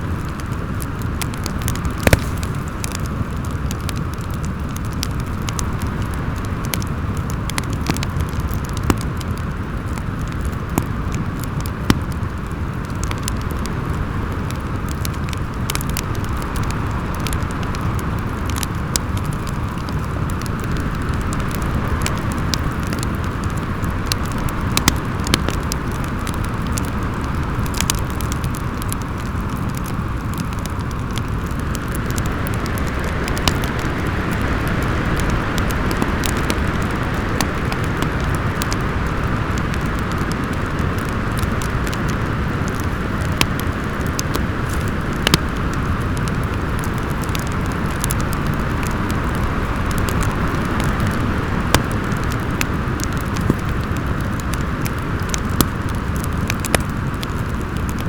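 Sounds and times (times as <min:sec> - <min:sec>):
fireplace fire crackling: 0:00.0 - 0:58.0
loud fire snaps: 0:00.0 - 0:58.0
wind howling: 0:00.7 - 0:04.1.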